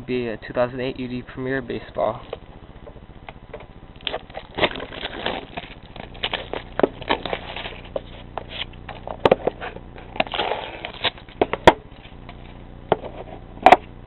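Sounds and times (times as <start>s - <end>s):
packaging crackling and rustling: 4.0s - 12.2s.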